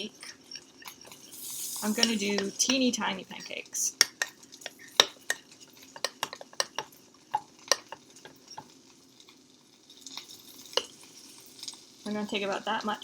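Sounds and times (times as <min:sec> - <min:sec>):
spoon scraping bowl of batter: 0:00.1 - 0:07.0.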